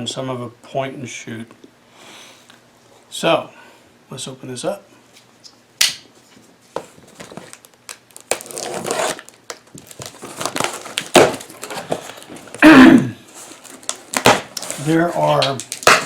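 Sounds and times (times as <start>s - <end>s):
packaging crinkling and tearing: 7.0s - 12.6s, 13.3s - 16.0s.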